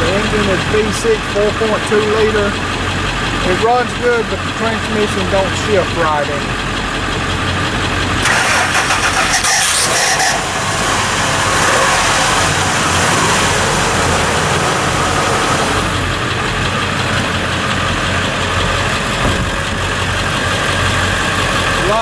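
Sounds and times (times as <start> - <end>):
pickup truck engine idling: 0.0 - 22.0.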